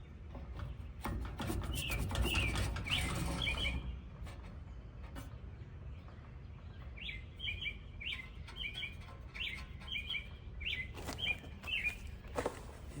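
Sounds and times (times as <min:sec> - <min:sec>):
songbird singing: 0:00.0 - 0:13.0.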